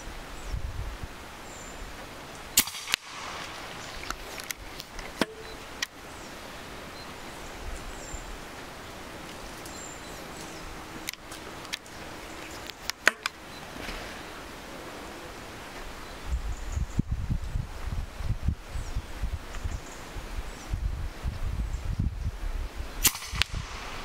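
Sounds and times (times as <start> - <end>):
outdoor background noise: 0.0 - 24.0
air rifle shots: 2.6 - 3.8, 23.0 - 24.0
bird chirps: 5.2 - 8.4.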